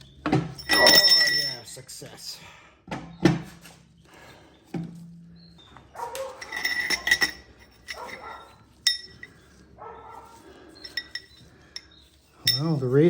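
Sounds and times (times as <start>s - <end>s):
steel parts clinking and rattling: 0.3s - 1.8s, 6.2s - 9.6s, 10.3s - 13.0s.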